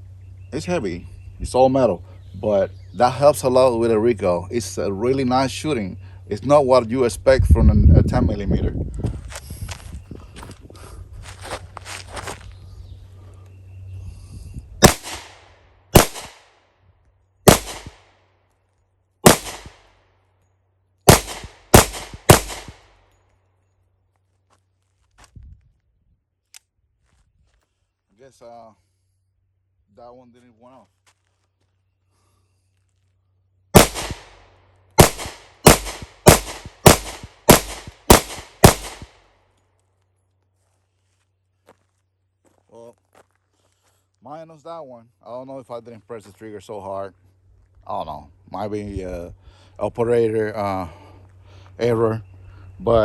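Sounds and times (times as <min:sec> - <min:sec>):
pistol shots: 0:14.8 - 0:16.6, 0:17.5 - 0:18.1, 0:19.2 - 0:20.0, 0:21.1 - 0:23.0, 0:33.8 - 0:34.4, 0:35.0 - 0:39.2.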